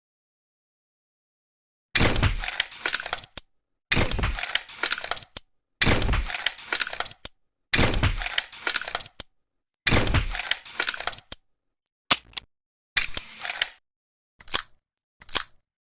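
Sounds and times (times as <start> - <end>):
pistol shot crack with rattle: 2.0 - 2.7, 3.9 - 4.6.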